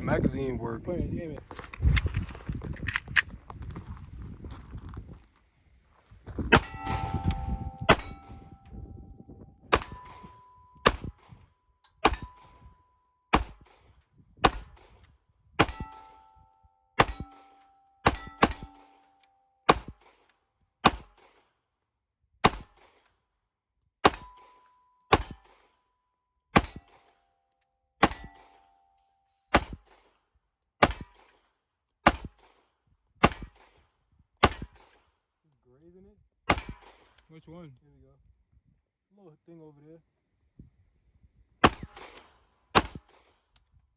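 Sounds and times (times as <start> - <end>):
firearm shots: 6.5 - 8.6, 9.7 - 11.4, 12.0 - 12.7, 13.3 - 15.0, 15.6 - 16.2, 17.0 - 19.0, 19.7 - 20.2, 20.8 - 21.4, 22.4 - 23.0, 24.0 - 24.5, 25.1 - 25.7, 26.6 - 27.1, 28.0 - 28.6, 29.5 - 30.1, 30.8 - 31.4, 32.0 - 32.6, 33.2 - 33.8, 34.4 - 35.0, 36.5 - 37.2, 41.6 - 43.3
short metallic ring: 6.6 - 8.8.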